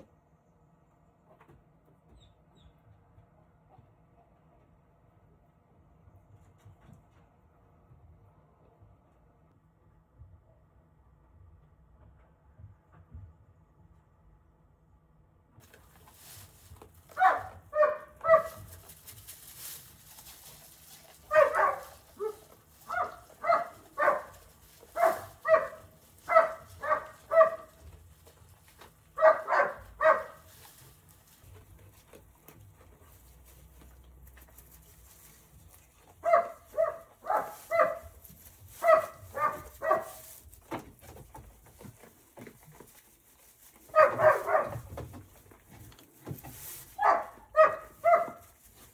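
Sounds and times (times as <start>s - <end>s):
dog barking: 17.1s - 18.8s, 21.2s - 27.9s, 29.2s - 30.5s, 36.2s - 40.3s, 43.9s - 44.9s, 47.0s - 48.5s.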